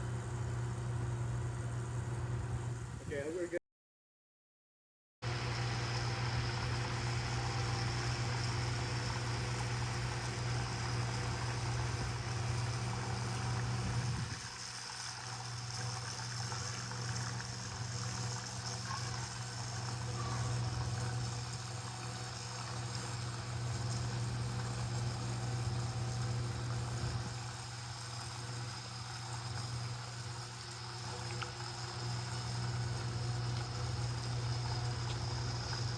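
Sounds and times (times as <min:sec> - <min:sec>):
small electric motors whirring: 0:06.0 - 0:35.9.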